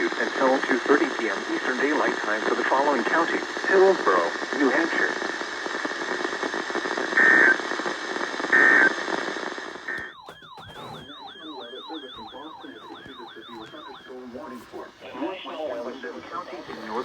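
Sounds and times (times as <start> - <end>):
radio hiss: 0.0 - 17.0
siren-like alert tone: 10.0 - 14.1.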